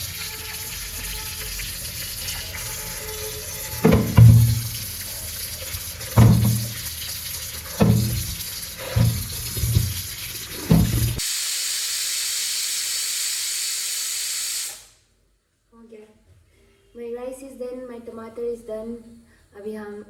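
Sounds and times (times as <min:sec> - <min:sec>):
tap water running into sink: 0:00.0 - 0:11.2
potatoes knocking: 0:06.2 - 0:06.8, 0:07.8 - 0:11.2.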